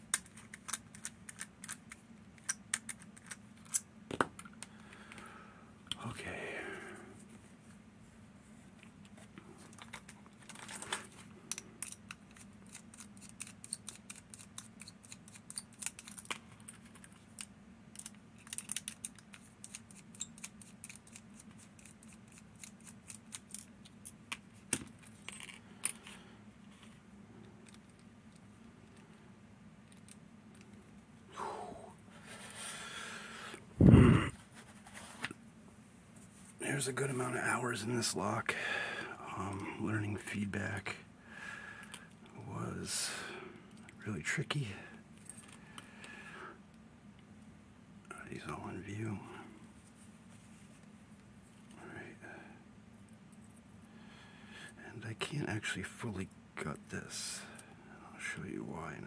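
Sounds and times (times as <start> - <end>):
steady low hum: 0.0 - 59.0
metallic clicks of lock parts: 9.8 - 26.2.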